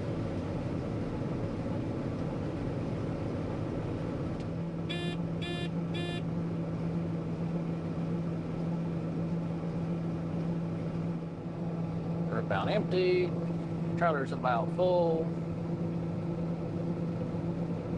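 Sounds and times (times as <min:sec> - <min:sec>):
combine harvester running: 0:00.0 - 0:17.9
steady low hum: 0:00.0 - 0:17.9
short electronic beeps: 0:04.9 - 0:06.2.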